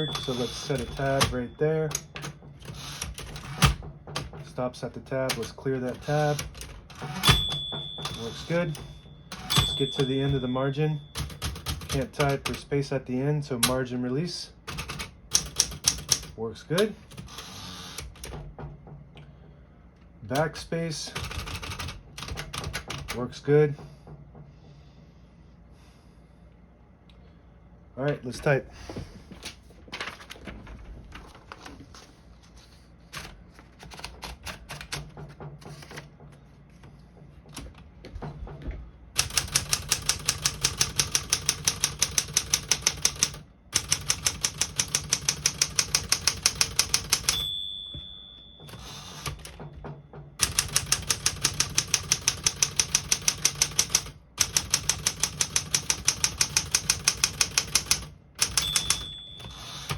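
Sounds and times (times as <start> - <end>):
typewriter margin bell: 0.0 - 3.7, 5.3 - 12.6, 39.2 - 49.8, 50.4 - 59.9
manual typewriter keystrokes: 0.0 - 4.5, 5.1 - 12.7, 14.7 - 18.5, 20.3 - 23.2, 33.2 - 36.1, 39.2 - 47.6, 48.6 - 49.8, 50.4 - 59.9.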